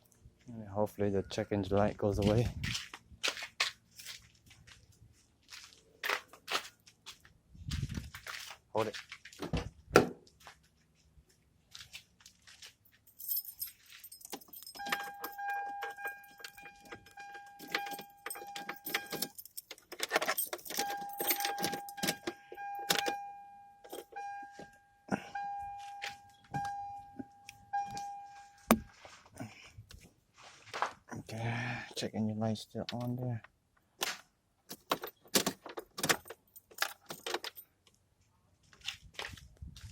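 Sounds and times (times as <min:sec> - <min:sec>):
keys jangling in ignition: 0:12.9 - 0:24.5, 0:34.7 - 0:37.7
electronic warning chime: 0:14.7 - 0:19.4, 0:20.8 - 0:28.8.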